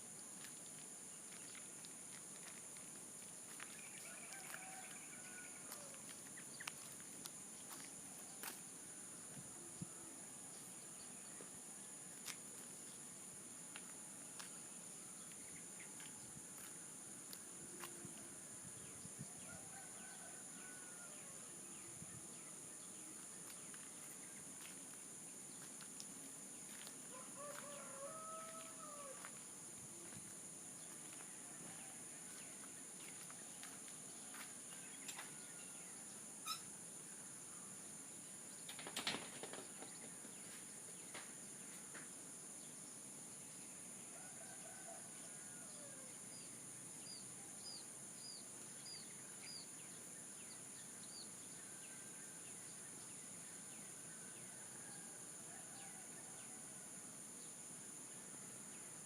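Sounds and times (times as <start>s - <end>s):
distant rooster crowing: 4.0s - 6.1s, 19.4s - 21.7s, 27.1s - 29.4s, 44.1s - 46.1s.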